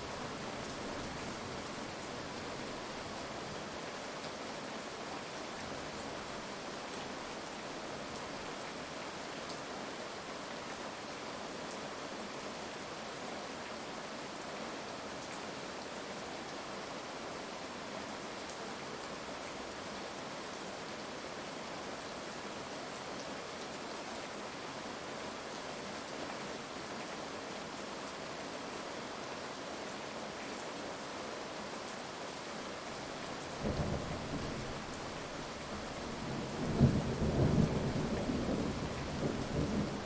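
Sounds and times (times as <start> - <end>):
heavy rain falling: 0.0 - 9.2, 31.4 - 40.0.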